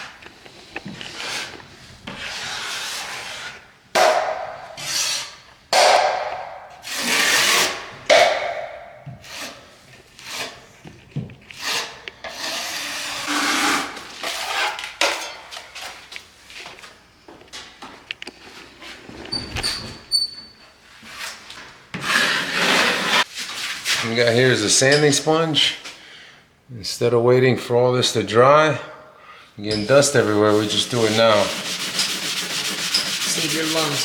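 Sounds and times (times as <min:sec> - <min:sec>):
hand tool scraping drywall: 0:00.0 - 0:08.0, 0:09.0 - 0:10.8, 0:11.5 - 0:16.0, 0:21.0 - 0:24.4, 0:29.7 - 0:34.0.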